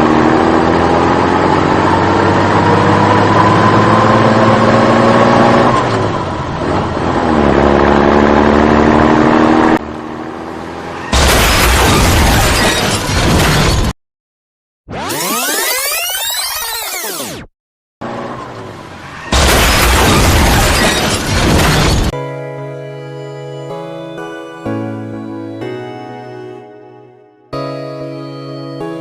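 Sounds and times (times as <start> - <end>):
vehicle engine revving: 0.0 - 11.1.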